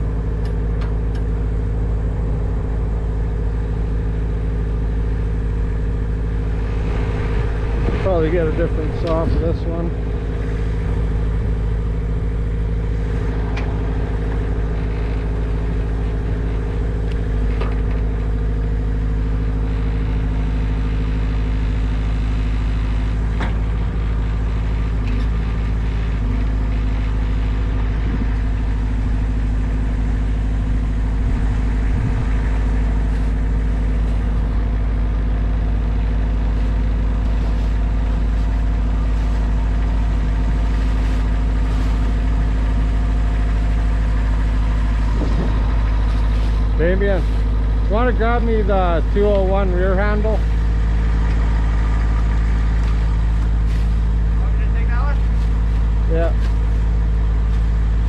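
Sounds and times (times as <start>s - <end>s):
large engine idling: 0.0s - 58.0s.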